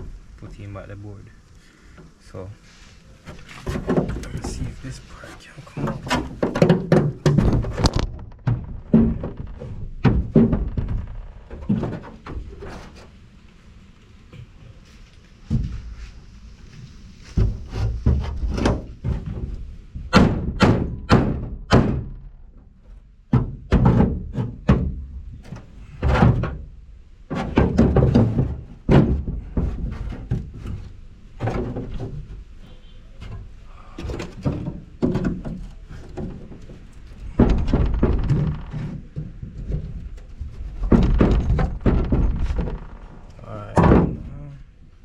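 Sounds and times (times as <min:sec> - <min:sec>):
board banging on boat hull: 0:05.8 - 0:12.7, 0:17.3 - 0:22.4, 0:23.3 - 0:26.7, 0:27.3 - 0:33.0, 0:34.0 - 0:44.3.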